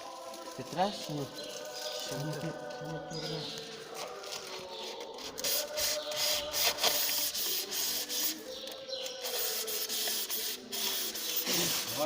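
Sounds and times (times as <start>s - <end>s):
rough scraping and rubbing: 0.0s - 12.0s.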